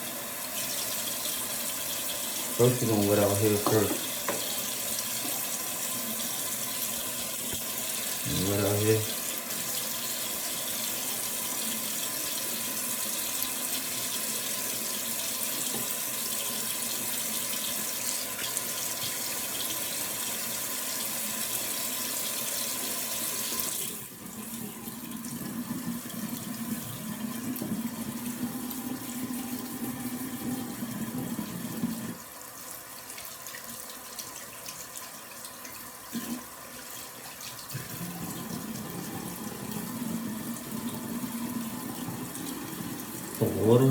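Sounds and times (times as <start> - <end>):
tap water running into sink: 0.0 - 43.9.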